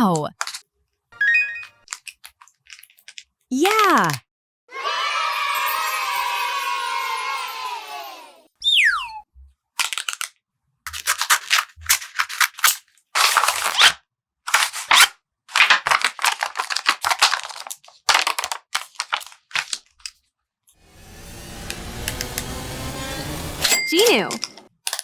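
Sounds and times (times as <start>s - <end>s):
paper rustling and crinkling: 0.4s - 0.6s, 1.8s - 4.2s, 9.8s - 10.3s, 10.9s - 20.2s, 24.3s - 25.0s.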